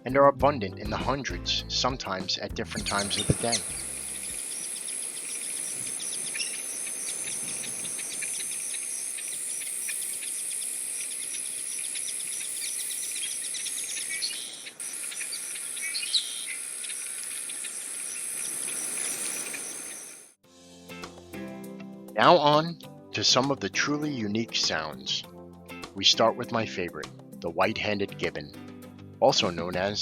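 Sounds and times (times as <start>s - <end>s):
ducks whistling: 2.7s - 20.2s
high-pitched insect drone: 2.8s - 20.4s.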